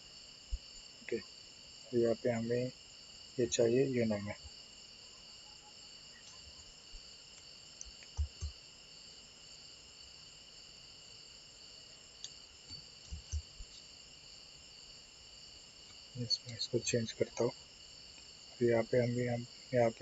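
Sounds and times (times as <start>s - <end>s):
soft low thumps: 8.2s - 8.5s, 13.0s - 13.8s.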